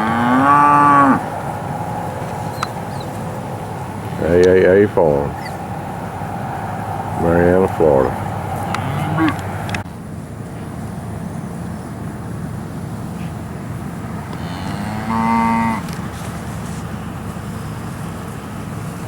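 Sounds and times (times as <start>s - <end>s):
calf mooing: 0.0s - 1.6s, 7.5s - 9.7s, 14.3s - 16.0s
low background noise: 0.0s - 19.0s.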